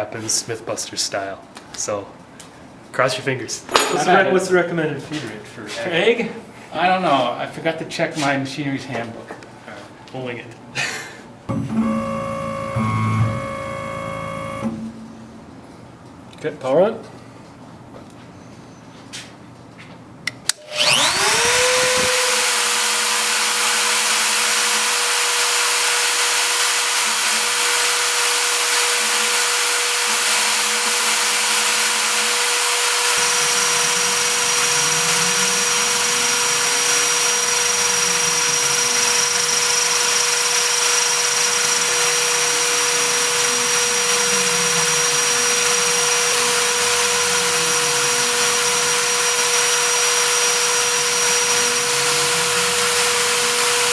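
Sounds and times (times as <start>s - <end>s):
high-speed spindle whine: 11.5s - 14.9s, 20.6s - 53.9s
axis motors low tones: 11.5s - 15.0s, 20.7s - 22.6s, 32.9s - 53.9s.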